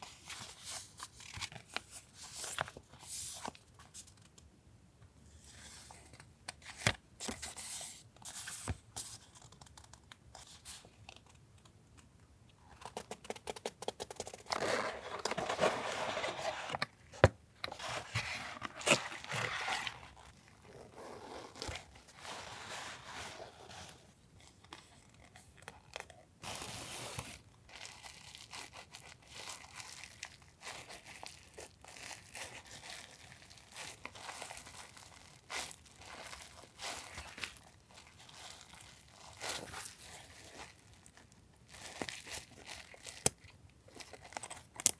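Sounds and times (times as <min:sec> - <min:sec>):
packaging crinkling and tearing: 0:12.8 - 0:22.3, 0:25.5 - 0:44.9.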